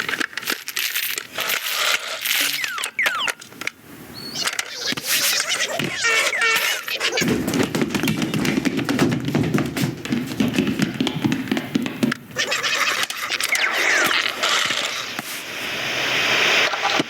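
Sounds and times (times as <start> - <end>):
squeaky falling chirps: 1.9 - 8.5, 12.3 - 15.1
rapid tapping and clattering: 5.8 - 13.4.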